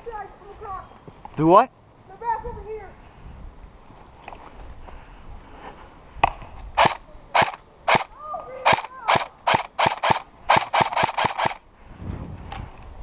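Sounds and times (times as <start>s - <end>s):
airsoft gun shots: 6.8s - 11.6s.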